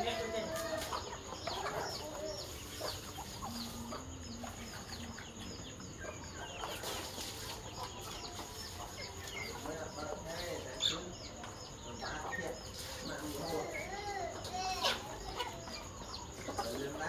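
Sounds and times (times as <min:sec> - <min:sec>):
chickens clucking: 0:00.0 - 0:17.0.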